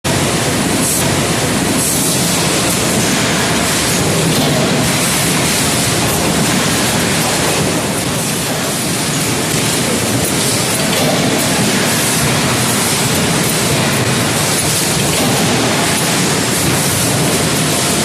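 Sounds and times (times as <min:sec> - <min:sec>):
forging machinery noise: 0:00.1 - 0:18.0.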